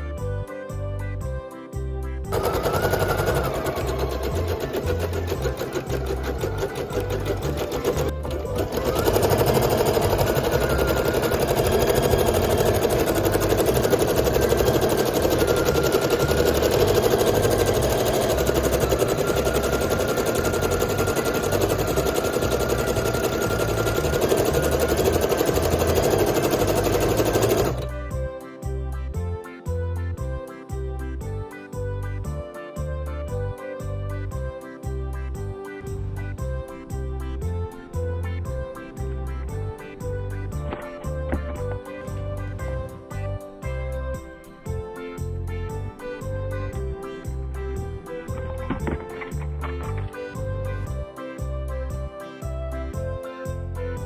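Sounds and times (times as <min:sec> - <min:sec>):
music: 0:00.0 - 0:54.0
embroidery machine stitching: 0:02.3 - 0:28.0.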